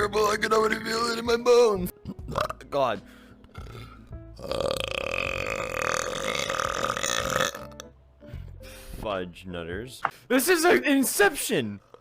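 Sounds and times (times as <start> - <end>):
faint background music: 0.0 - 12.0
long burp: 2.0 - 2.6, 3.5 - 7.9.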